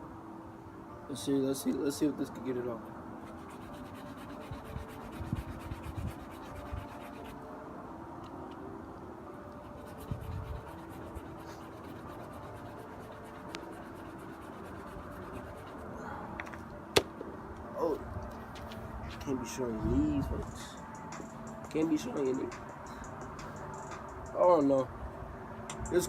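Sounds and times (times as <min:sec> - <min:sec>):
brush scrubbing a sneaker: 0:03.2 - 0:07.4, 0:09.7 - 0:15.8.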